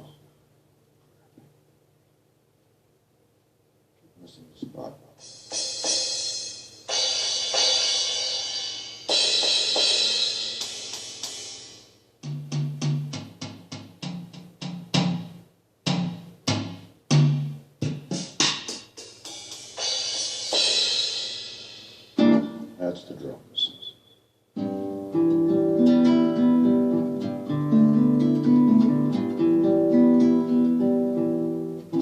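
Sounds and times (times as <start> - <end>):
cymbal crashes: 5.2 - 11.9, 19.0 - 22.3.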